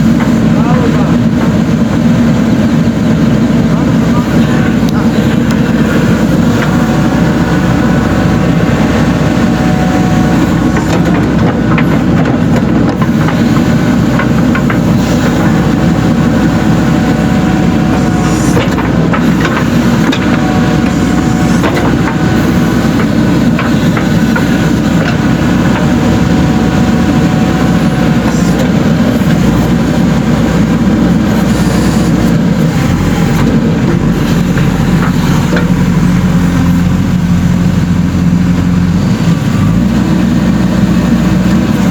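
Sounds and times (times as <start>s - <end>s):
backhoe diesel engine running: 0.0s - 41.9s.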